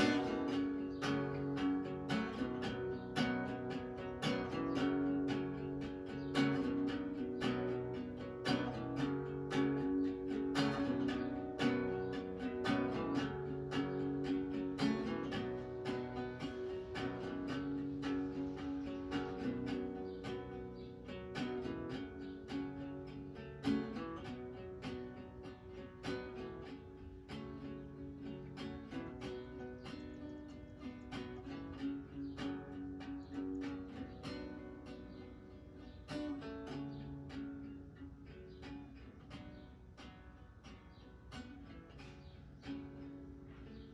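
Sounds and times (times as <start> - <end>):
acoustic guitar strumming chords: 0.0 - 43.9.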